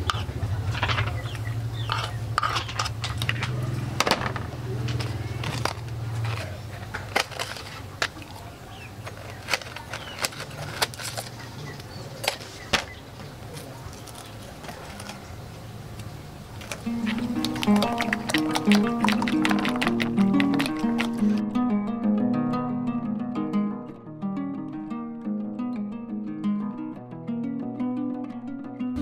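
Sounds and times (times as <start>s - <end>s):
faint voices: 1.9s - 21.2s.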